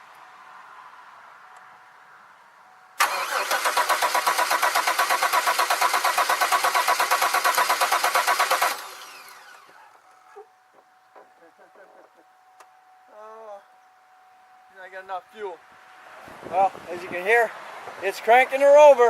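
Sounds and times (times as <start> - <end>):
car engine cranking: 3.0 - 10.0.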